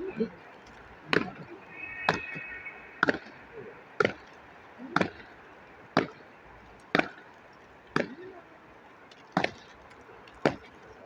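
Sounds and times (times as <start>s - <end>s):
sharp impacts: 1.1s - 6.2s.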